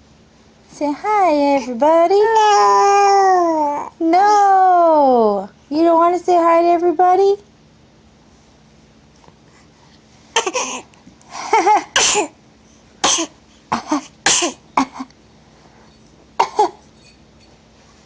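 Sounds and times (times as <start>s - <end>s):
baby fake-coughing: 10.4s - 10.9s, 11.6s - 12.4s, 13.0s - 15.1s, 16.4s - 16.9s.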